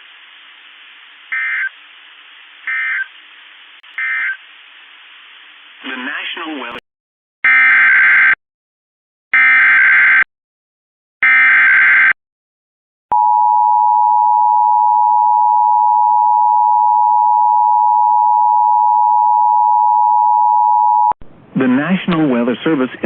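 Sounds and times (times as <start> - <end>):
loud steady dual tone: 13.1 - 21.2.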